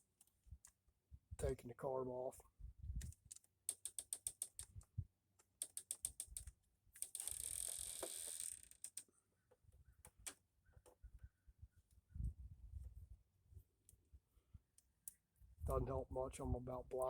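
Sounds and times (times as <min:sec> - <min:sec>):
ratchet clicking: 0:03.7 - 0:04.7, 0:05.6 - 0:09.1.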